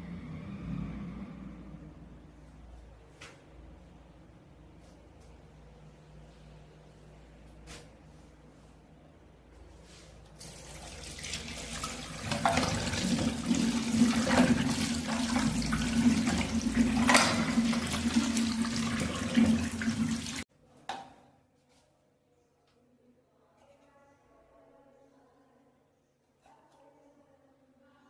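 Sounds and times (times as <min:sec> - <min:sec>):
toilet flushing: 0:10.4 - 0:20.4.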